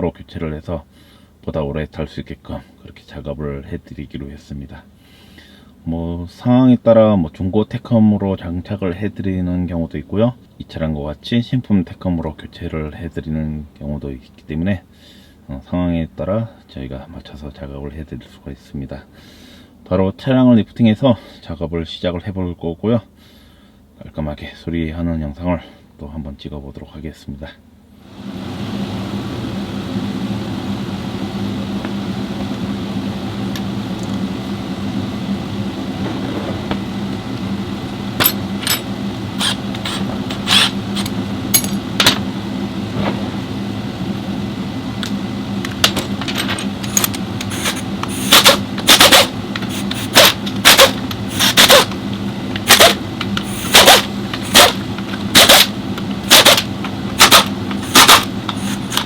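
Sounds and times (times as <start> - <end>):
low machine hum: 27.8 - 59.0
impact wrench bursts: 36.0 - 42.2, 45.7 - 59.0.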